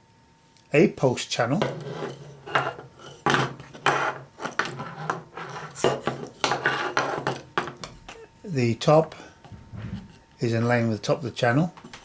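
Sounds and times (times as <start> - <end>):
scraping rubs: 1.6 - 8.2, 9.4 - 10.3
steady low hum: 7.5 - 12.0.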